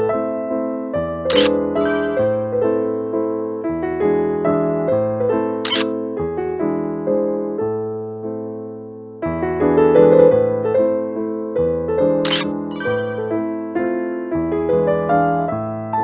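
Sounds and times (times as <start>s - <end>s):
gentle electric piano music: 1.3s - 3.3s, 12.3s - 13.7s.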